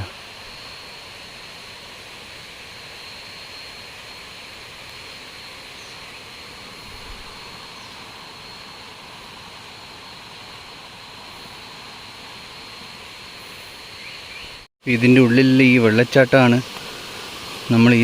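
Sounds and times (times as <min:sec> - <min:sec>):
even hiss: 0:00.0 - 0:18.0
insect drone: 0:00.0 - 0:18.0.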